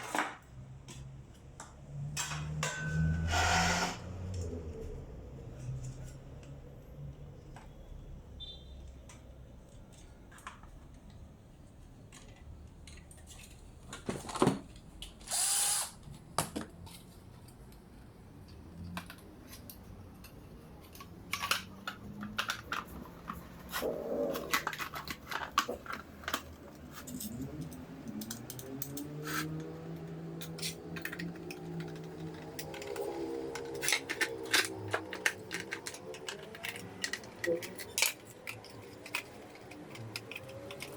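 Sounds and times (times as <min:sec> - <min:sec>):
power drill running: 0:15.2 - 0:16.0
tools clicking and knocking: 0:18.5 - 0:40.9.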